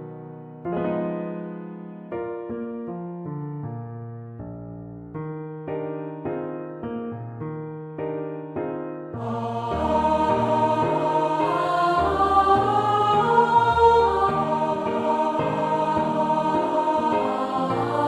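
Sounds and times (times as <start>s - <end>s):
piano chords: 0.0s - 18.0s
choir singing a hymn: 9.2s - 18.0s.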